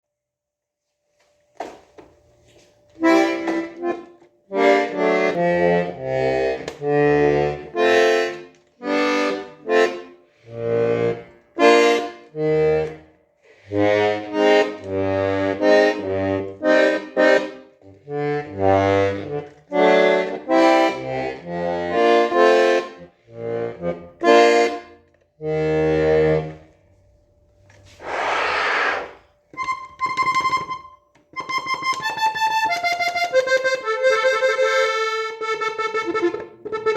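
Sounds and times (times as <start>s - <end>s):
button accordion chords: 2.9s - 26.8s, 28.0s - 36.9s
breathy rush of air: 27.9s - 29.3s.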